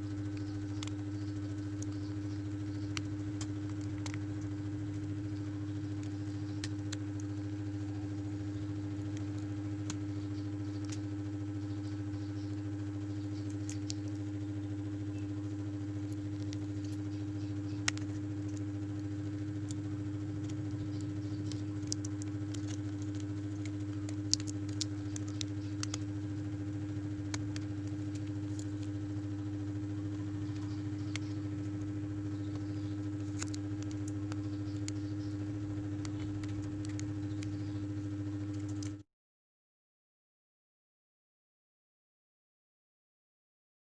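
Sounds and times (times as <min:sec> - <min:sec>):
low electrical hum: 0:00.0 - 0:39.0.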